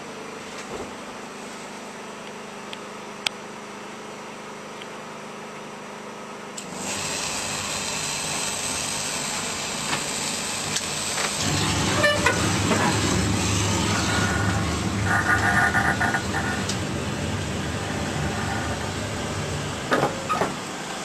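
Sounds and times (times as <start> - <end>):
vehicle noise: 8.2 - 21.0.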